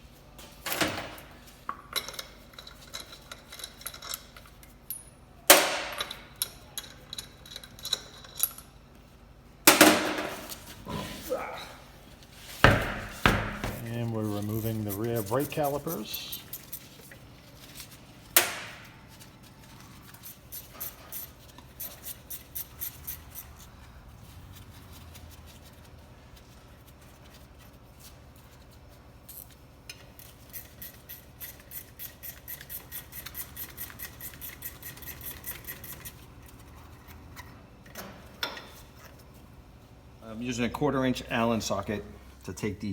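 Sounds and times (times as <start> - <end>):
hand ratchet clicking: 12.9 - 17.0, 20.1 - 23.7, 30.0 - 36.2.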